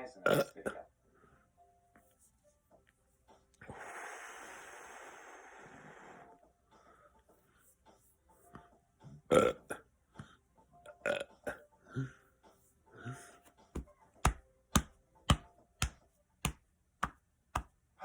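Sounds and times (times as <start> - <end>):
man burping: 0.2 - 0.8, 9.3 - 9.8, 11.0 - 12.1.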